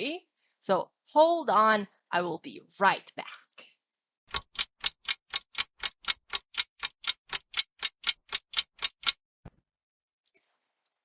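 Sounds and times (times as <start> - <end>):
clock click: 4.3 - 9.2
clock ticking: 4.3 - 9.2.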